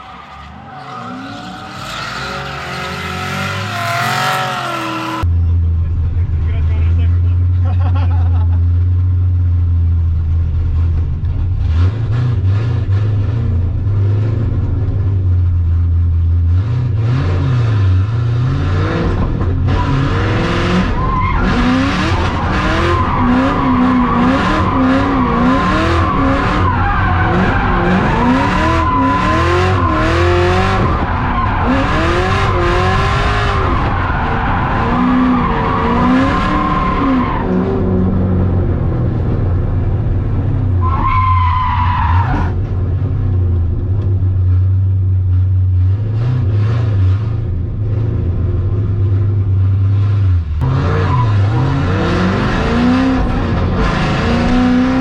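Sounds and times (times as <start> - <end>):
tires squealing: 0.0 - 5.2, 18.8 - 38.2, 40.6 - 42.7, 50.6 - 55.0
car engine revving: 0.0 - 55.0.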